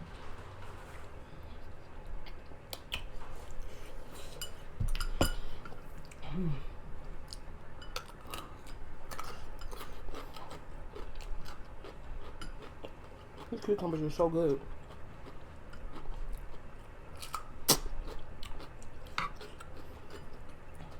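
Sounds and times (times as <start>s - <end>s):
chewing crisp cucumber: 1.6s - 4.3s, 7.1s - 20.9s.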